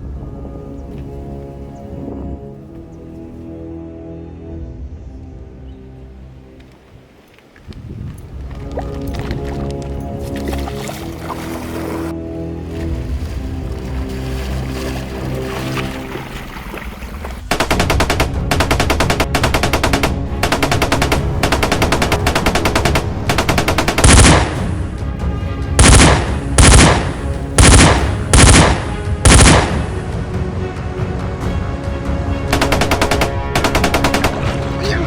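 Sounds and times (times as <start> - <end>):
background music: 0.0 - 35.0
automatic gunfire: 17.5 - 24.6, 25.8 - 29.9, 32.6 - 34.5.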